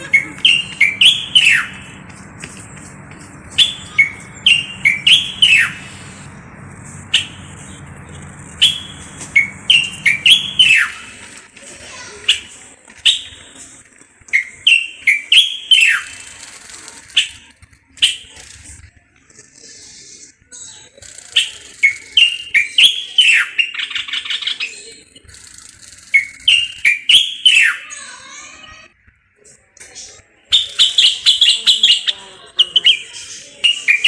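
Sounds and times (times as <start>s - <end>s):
low hum: 0.0s - 11.4s
bird singing whistled notes: 0.4s - 2.0s, 3.5s - 6.4s, 7.1s - 11.1s, 14.4s - 16.4s, 21.4s - 23.8s, 25.9s - 27.8s, 30.5s - 34.0s.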